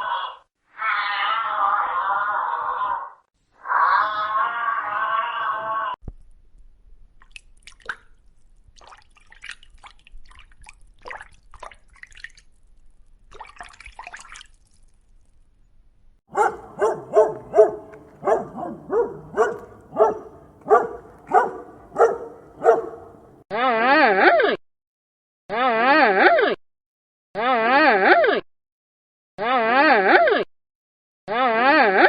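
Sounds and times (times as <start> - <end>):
dog barking: 16.3 - 23.4.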